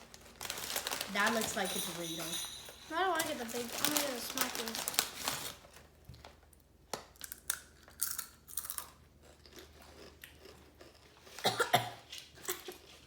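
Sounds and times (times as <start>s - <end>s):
chewing: 7.2s - 11.4s
crunching tortilla chip: 7.2s - 11.4s.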